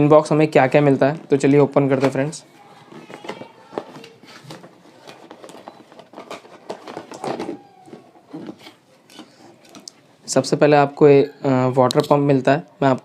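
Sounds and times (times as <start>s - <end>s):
cardboard packaging rustling: 1.1s - 9.9s.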